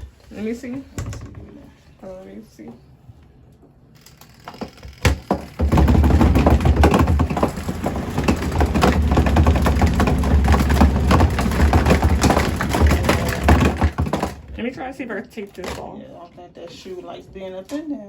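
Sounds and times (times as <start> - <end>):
shoe knocking and rattling: 4.5 - 14.6
washing machine spinning: 5.0 - 14.7.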